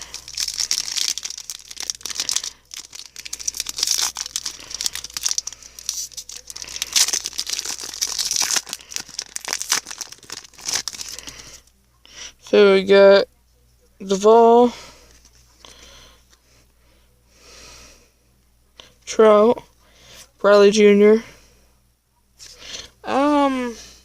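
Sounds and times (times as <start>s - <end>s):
wrapper crinkling and tearing: 0.0s - 11.7s.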